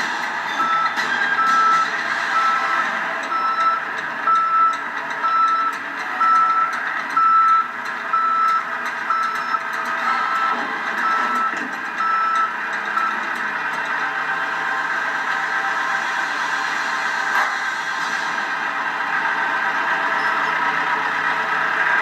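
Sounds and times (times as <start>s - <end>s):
machine engine running: 0.0s - 22.0s
reversing alarm beeping: 0.4s - 16.4s.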